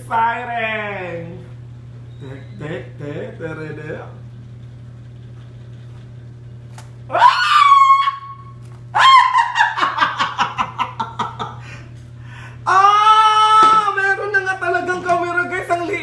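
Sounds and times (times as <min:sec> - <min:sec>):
low hum: 0:00.0 - 0:16.0
person squealing: 0:07.1 - 0:09.6, 0:12.7 - 0:14.1
person laughing: 0:09.0 - 0:12.0.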